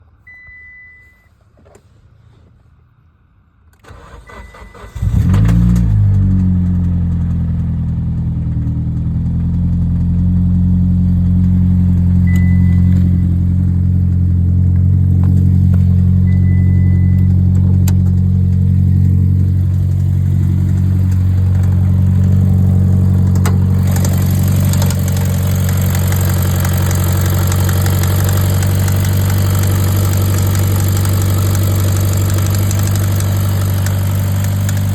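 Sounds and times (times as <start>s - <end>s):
short high beep: 0.3s - 1.3s, 12.2s - 13.3s, 16.2s - 17.4s
car engine starting and idling: 3.7s - 34.9s.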